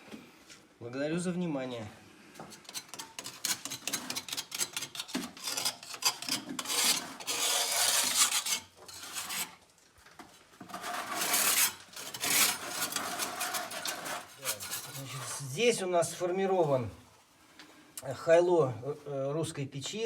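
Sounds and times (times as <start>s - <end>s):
scraping and rubbing noise: 2.5s - 9.6s, 10.6s - 16.2s.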